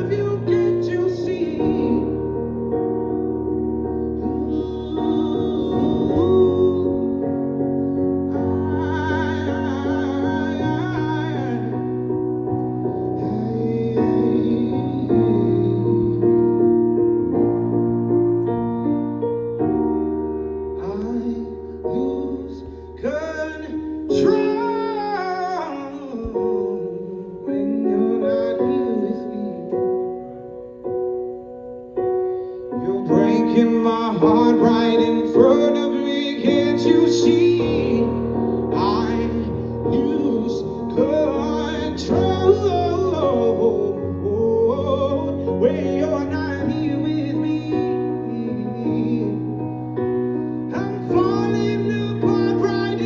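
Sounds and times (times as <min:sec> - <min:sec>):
low bass: 0:00.0 - 0:22.6
bass line: 0:00.0 - 0:25.0, 0:26.2 - 0:53.0
electric piano chords: 0:00.0 - 0:53.0.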